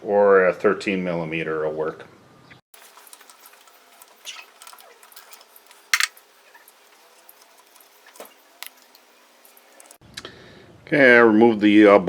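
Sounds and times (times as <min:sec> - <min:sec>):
wrench clinking on metal: 0:04.0 - 0:06.2.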